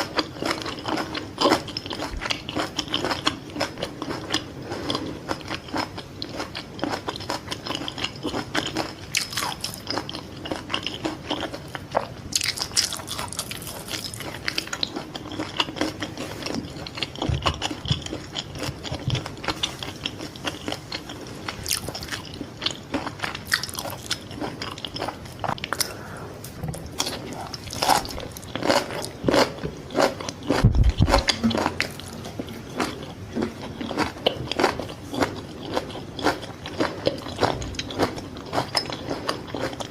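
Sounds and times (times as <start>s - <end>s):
crisp crunching of fried crust: 0.0s - 26.0s.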